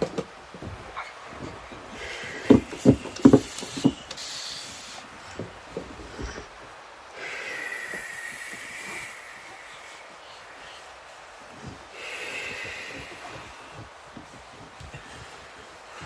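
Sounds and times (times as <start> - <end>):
dull taps: 0.0 - 4.2, 11.5 - 16.0
long breathy hisses: 0.0 - 16.0.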